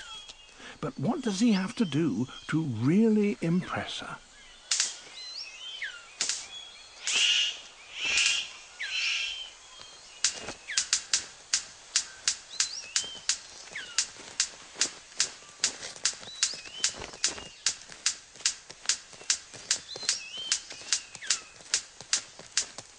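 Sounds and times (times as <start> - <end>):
bird gliding chirps: 0.0 - 18.0, 18.8 - 21.9
sharp snapping clicks: 4.6 - 5.1, 6.2 - 7.3, 9.8 - 22.9
bird rasping hisses: 6.2 - 9.5.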